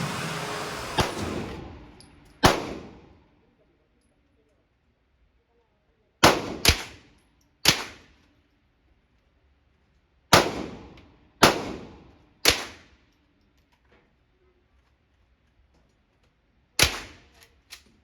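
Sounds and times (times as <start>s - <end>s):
gunshots with echo: 0.5s - 3.0s.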